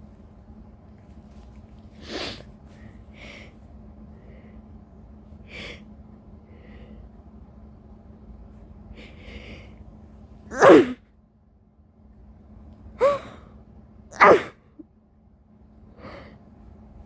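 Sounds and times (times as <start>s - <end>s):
woman's sharp noisy breath: 13.0s - 13.6s, 16.0s - 16.4s.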